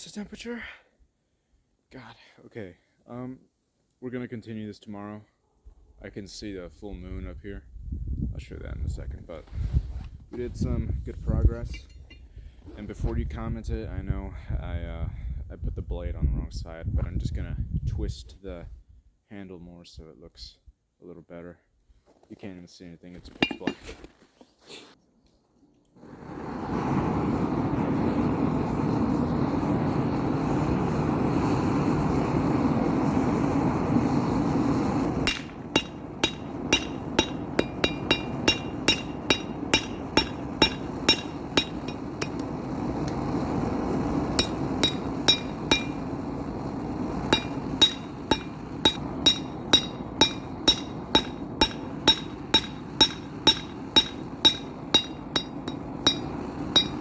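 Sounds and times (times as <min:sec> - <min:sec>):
steady rushing roar: 0:27.0 - 0:57.0
hammer striking steel on anvil: 0:35.3 - 0:42.5, 0:44.4 - 0:46.1, 0:47.3 - 0:57.0.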